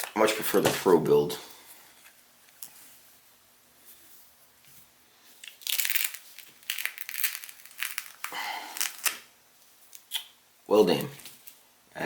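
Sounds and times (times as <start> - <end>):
material crinkling and rustling: 1.9 - 10.1.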